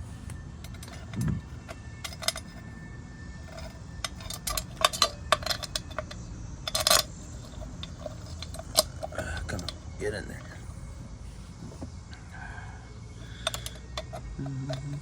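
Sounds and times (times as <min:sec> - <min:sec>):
small steel parts clinking: 0:00.6 - 0:02.7, 0:03.4 - 0:10.6, 0:13.2 - 0:15.0.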